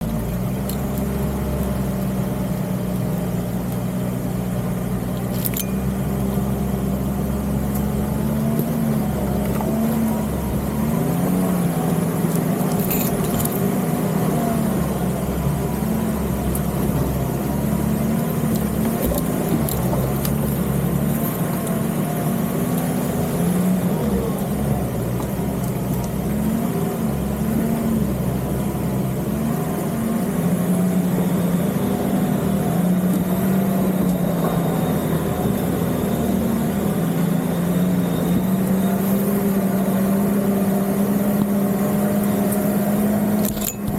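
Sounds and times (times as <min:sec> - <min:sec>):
engine running at low revs: 0:00.0 - 0:43.9.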